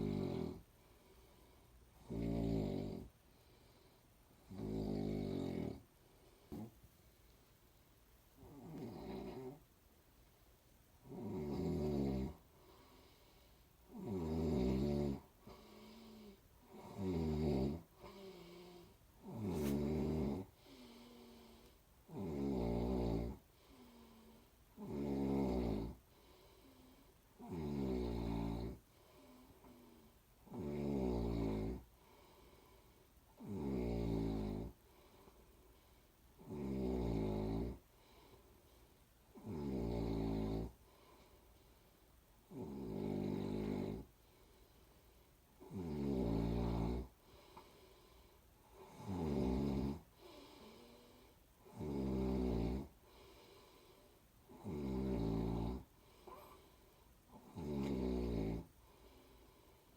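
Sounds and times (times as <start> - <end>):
person snoring: 0.0 - 0.7, 2.0 - 3.1, 4.4 - 5.8, 8.4 - 9.6, 11.0 - 13.1, 13.9 - 26.0, 26.7 - 31.9, 33.4 - 34.8, 36.4 - 37.8, 39.3 - 40.8, 42.5 - 44.1, 45.6 - 47.6, 48.7 - 53.6, 54.5 - 56.7, 57.3 - 58.7.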